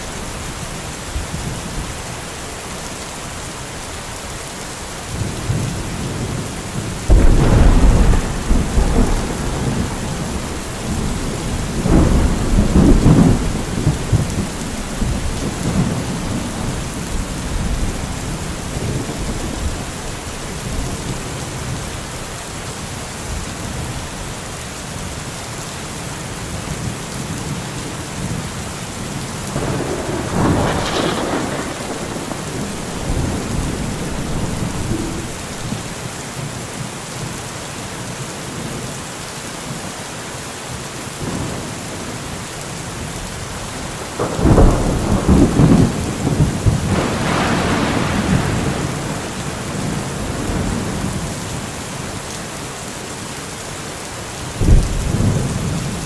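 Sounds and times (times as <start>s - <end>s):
heavy rain: 0.0s - 56.0s
thunder rumbling: 5.1s - 22.1s, 29.5s - 36.0s, 43.9s - 51.7s, 54.6s - 56.0s.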